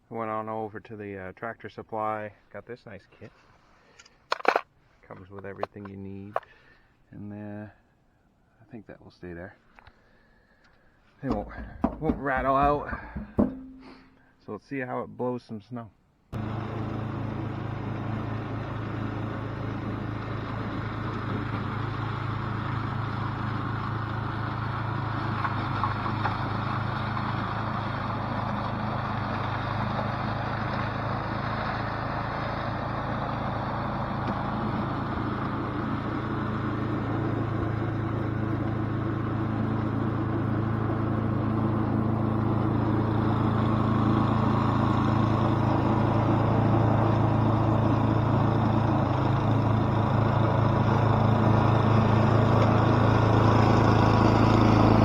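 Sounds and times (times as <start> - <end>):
snowblower engine running: 11.2 - 14.1, 16.3 - 55.0.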